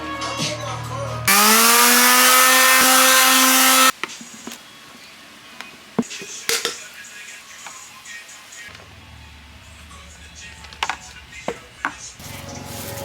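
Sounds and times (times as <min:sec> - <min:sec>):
power drill running: 0:01.3 - 0:03.9.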